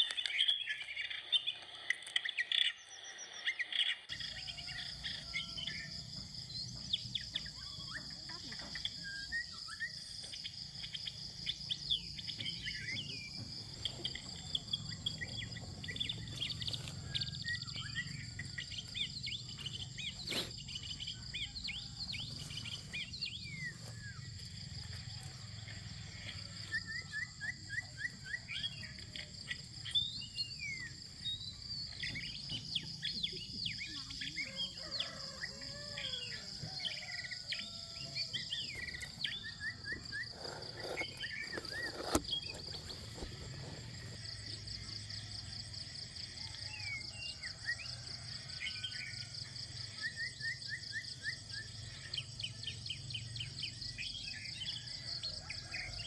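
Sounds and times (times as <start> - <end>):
birds chirping and calling: 0.0 - 25.0
insects droning: 0.0 - 56.0.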